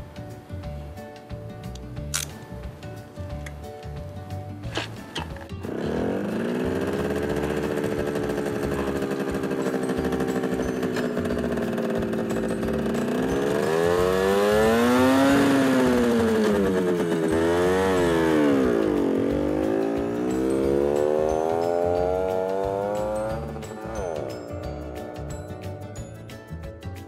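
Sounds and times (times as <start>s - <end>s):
moped engine revving: 4.7s - 26.2s.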